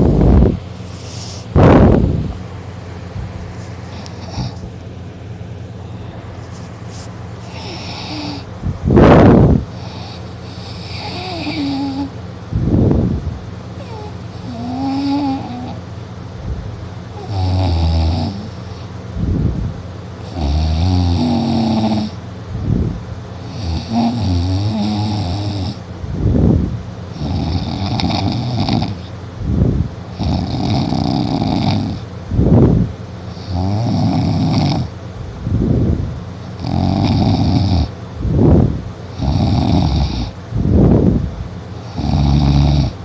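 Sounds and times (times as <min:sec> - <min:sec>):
sharp puff of breath: 0:00.8 - 0:01.6
person snoring loudly: 0:03.9 - 0:04.6, 0:07.4 - 0:08.5, 0:09.1 - 0:12.9, 0:13.8 - 0:15.8, 0:17.1 - 0:18.9, 0:20.2 - 0:22.2, 0:23.4 - 0:25.8, 0:27.1 - 0:29.1, 0:30.1 - 0:32.6, 0:33.3 - 0:34.9, 0:36.5 - 0:40.4, 0:41.8 - 0:43.0.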